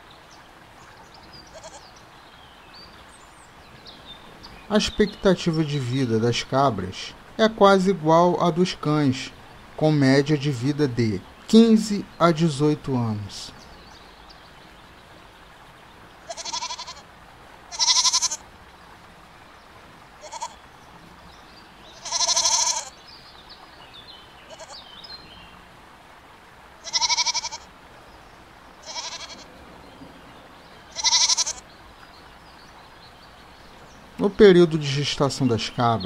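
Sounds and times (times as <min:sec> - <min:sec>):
goats bleating: 0:01.5 - 0:01.8, 0:16.2 - 0:17.1, 0:17.7 - 0:18.4, 0:20.2 - 0:20.6, 0:21.9 - 0:22.9, 0:24.5 - 0:24.8, 0:26.8 - 0:27.7, 0:28.8 - 0:29.5, 0:30.9 - 0:31.6.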